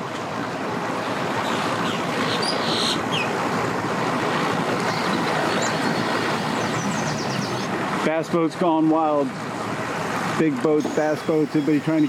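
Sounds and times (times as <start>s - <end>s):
water wash: 4.4s - 8.1s, 9.6s - 12.0s
outboard motor running: 4.6s - 8.0s, 10.8s - 12.0s.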